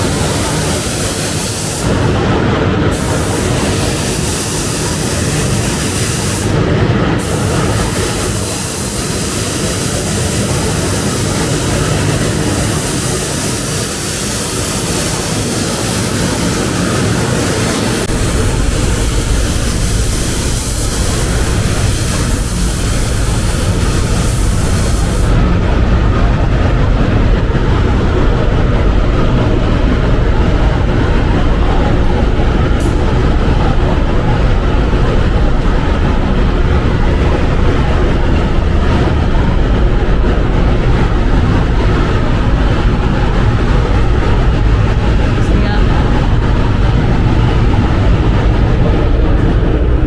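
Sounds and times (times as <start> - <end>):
air spray gun hissing: 0.0 - 2.1, 2.9 - 6.6, 7.2 - 25.4
low booth drone: 0.0 - 50.0.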